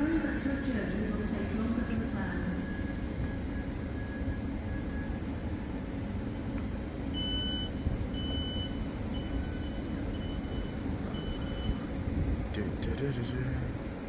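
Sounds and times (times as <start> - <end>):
low rumble of railway station: 0.0 - 14.0
high electronic warning beep: 1.1 - 11.8.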